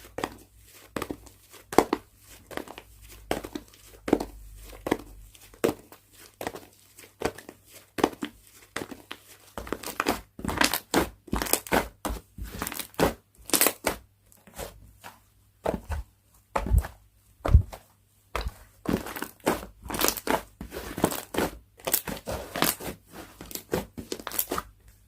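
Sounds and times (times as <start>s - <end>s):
slime crackling and squishing: 1.8s - 15.0s, 18.4s - 25.0s.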